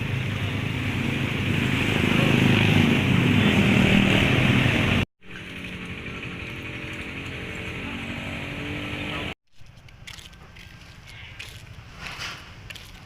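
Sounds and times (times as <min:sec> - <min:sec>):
vehicle engine running: 0:00.0 - 0:09.4.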